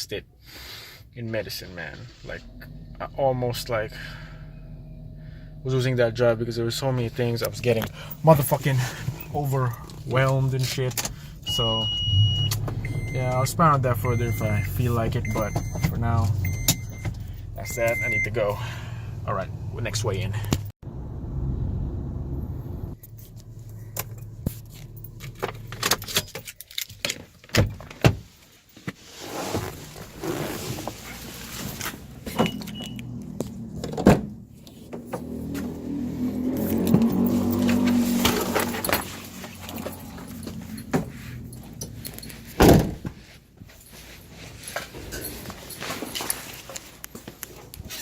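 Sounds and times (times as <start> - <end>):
car humming: 2.1 - 25.9, 29.9 - 42.8.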